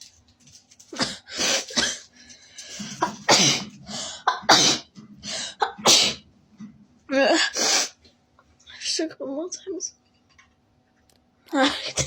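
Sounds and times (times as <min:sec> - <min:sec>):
person coughing: 0:00.9 - 0:02.1, 0:02.8 - 0:04.9, 0:05.5 - 0:06.2, 0:11.6 - 0:12.0
person sneezing: 0:05.5 - 0:06.2.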